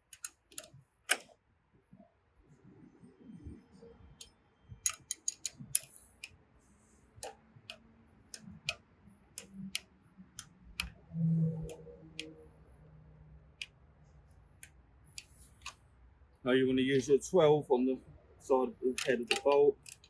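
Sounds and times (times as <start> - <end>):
hand tool clicks: 4.8 - 6.0, 19.0 - 20.0.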